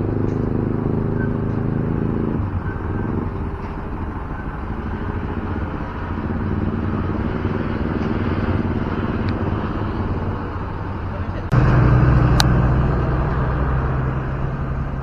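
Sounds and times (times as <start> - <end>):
vehicle engines rumbling: 0.0 - 15.0
steady pitched tone: 11.5 - 14.8.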